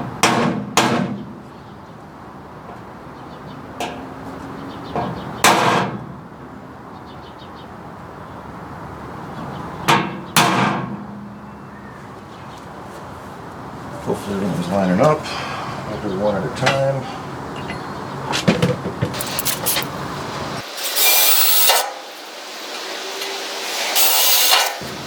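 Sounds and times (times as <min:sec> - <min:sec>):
hammer striking metal punch: 0:00.2 - 0:01.3, 0:09.9 - 0:11.4.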